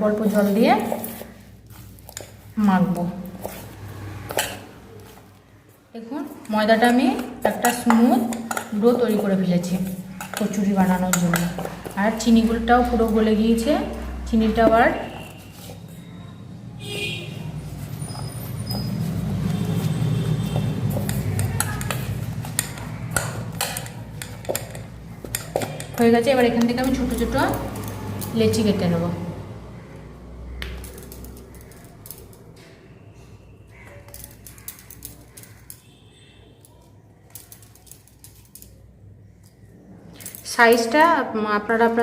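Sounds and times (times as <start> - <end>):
hands kneading dough: 0.0 - 3.8
kitchenware knocks and clinks: 20.9 - 27.1.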